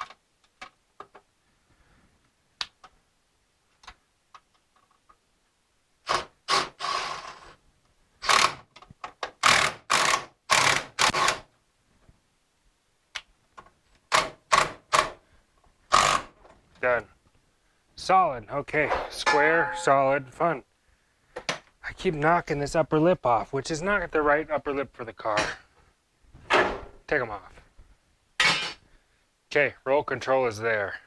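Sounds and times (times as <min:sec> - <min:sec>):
tools knocking and clacking: 0:18.9 - 0:20.2.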